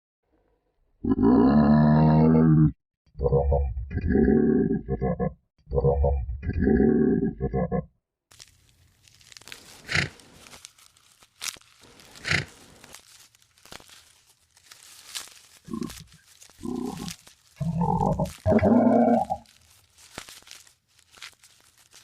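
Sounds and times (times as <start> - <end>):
giraffe snorting: 9.8 - 10.2, 12.1 - 12.7, 15.7 - 19.5
giraffe grunting: 15.7 - 19.5.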